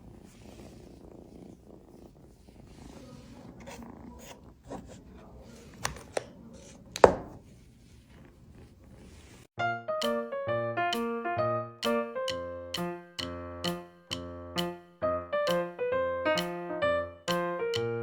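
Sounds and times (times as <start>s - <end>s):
kitten purring: 0.0s - 7.0s
piano music: 9.6s - 18.0s
sharp clicks or taps: 10.9s - 11.2s, 11.8s - 14.8s, 16.4s - 16.6s, 17.3s - 17.9s.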